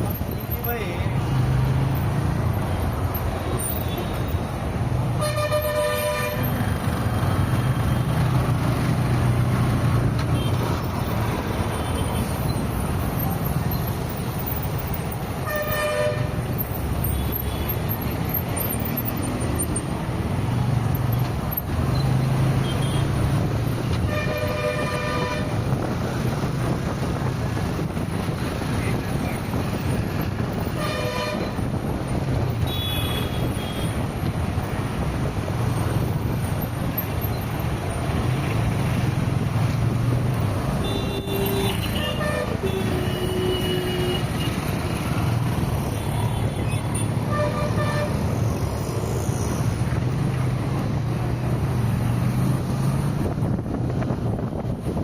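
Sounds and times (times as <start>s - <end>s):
car road and engine noise: 0.0s - 55.0s
vehicle horn honking: 5.2s - 6.5s, 24.0s - 25.6s, 30.8s - 31.6s, 32.6s - 33.9s, 40.8s - 44.6s, 47.3s - 48.2s.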